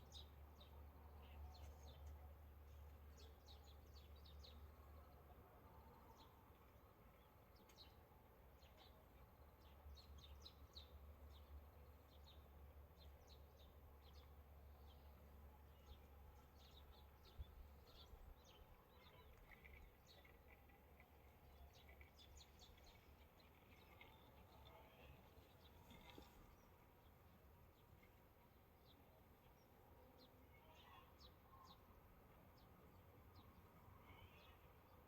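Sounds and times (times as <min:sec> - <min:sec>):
faint bird chirps: 0:33.4 - 0:35.0.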